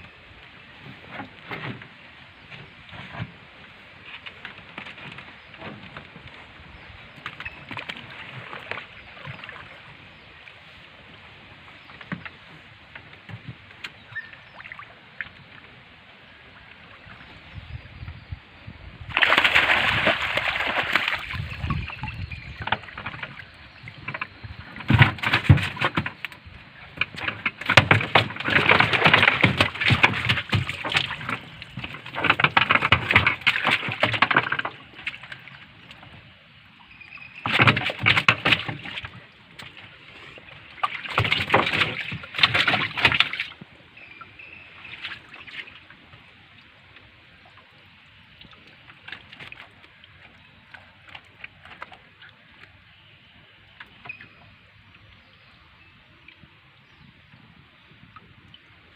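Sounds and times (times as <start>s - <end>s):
water splashing and sloshing: 0.0s - 58.9s.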